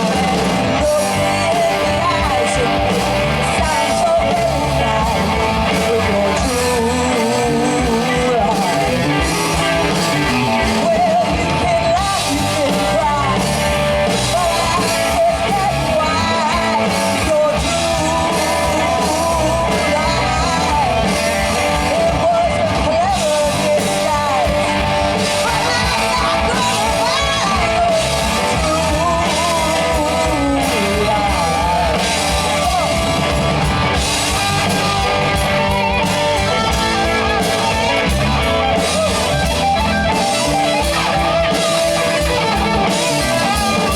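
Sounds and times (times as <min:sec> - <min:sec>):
electric guitar: 0:00.0 - 0:43.9
person singing lead vocal: 0:00.0 - 0:43.9
rock band playing: 0:00.0 - 0:43.9.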